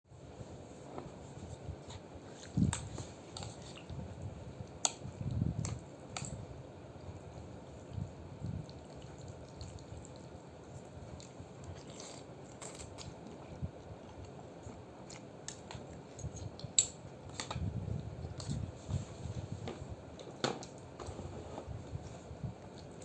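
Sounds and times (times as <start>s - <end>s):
wet chewing sounds: 7.0s - 19.5s, 21.7s - 23.0s.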